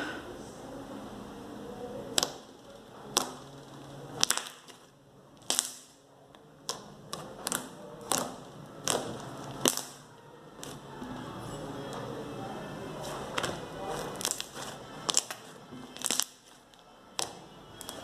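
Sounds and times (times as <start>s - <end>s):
air pockets popping in slime: 4.1s - 6.0s, 6.6s - 10.0s, 13.4s - 16.6s
slime being squeezed: 13.4s - 16.6s.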